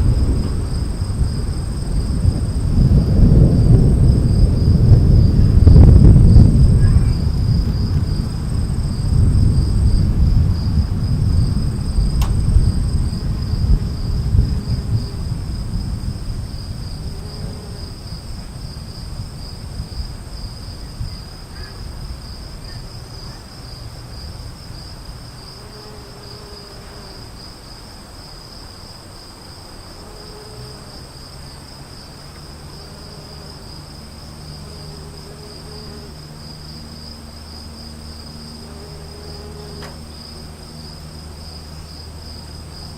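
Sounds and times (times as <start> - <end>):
low rumble of thunder: 0.0 - 29.0
high-pitched insect trill: 0.0 - 42.9.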